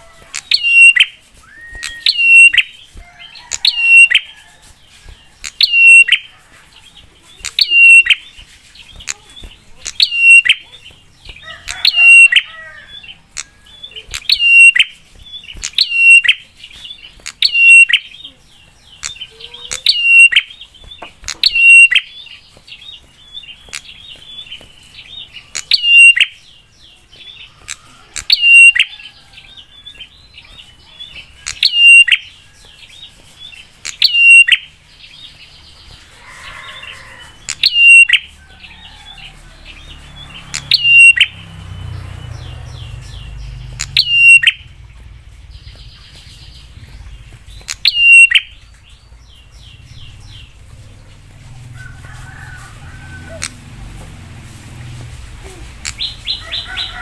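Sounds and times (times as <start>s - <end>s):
bird calling sharp notes: 0.0s - 4.3s, 5.4s - 6.3s, 7.4s - 8.3s, 9.0s - 10.8s, 11.6s - 12.8s, 13.4s - 15.0s, 15.6s - 16.5s, 17.2s - 18.2s, 19.0s - 20.6s, 21.3s - 22.2s, 25.5s - 26.4s, 27.7s - 28.9s, 31.4s - 32.3s, 33.8s - 34.7s, 36.3s - 38.3s, 40.5s - 41.3s, 43.2s - 44.8s, 46.0s - 48.7s
fast twittering: 40.2s - 50.8s.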